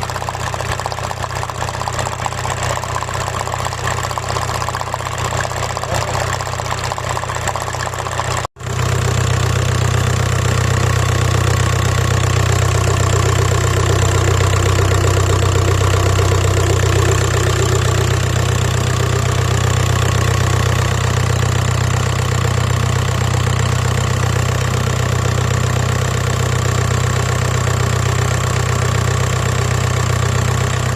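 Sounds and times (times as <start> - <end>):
car engine idling roughly: 0.0 - 30.9.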